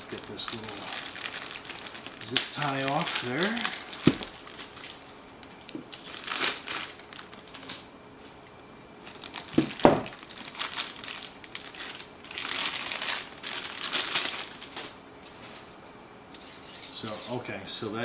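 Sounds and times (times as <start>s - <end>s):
plastic packaging crinkling: 0.0s - 8.4s, 9.0s - 15.7s.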